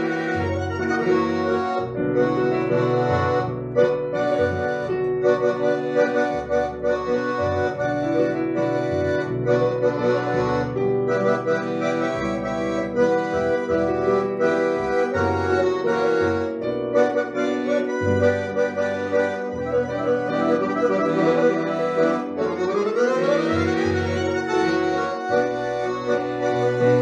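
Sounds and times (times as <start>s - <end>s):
accordion playing a tune: 0.0s - 27.0s.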